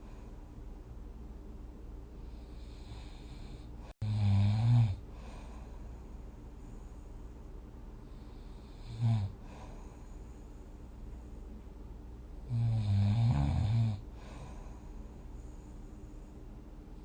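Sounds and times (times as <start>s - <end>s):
person snoring: 2.3s - 5.5s, 8.4s - 9.9s, 12.4s - 14.7s.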